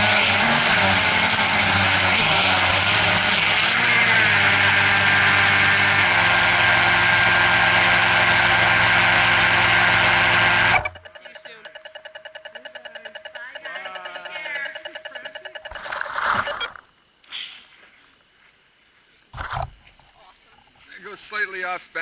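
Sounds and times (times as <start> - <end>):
drone propellers whirring: 0.0 - 16.8.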